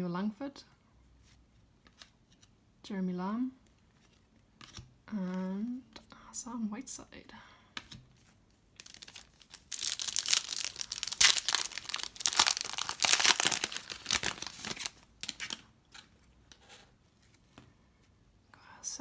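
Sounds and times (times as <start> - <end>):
plastic wrapper tearing and crinkling: 8.8 - 15.6.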